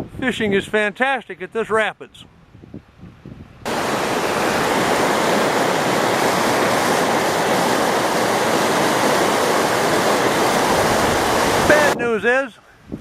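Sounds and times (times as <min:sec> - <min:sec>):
river rapids rushing: 0:03.7 - 0:12.0.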